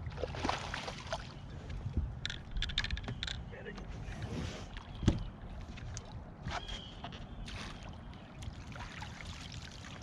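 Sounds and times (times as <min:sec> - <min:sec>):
water sloshing around boat: 0:00.0 - 0:10.0
light knocks on boat: 0:05.0 - 0:05.3.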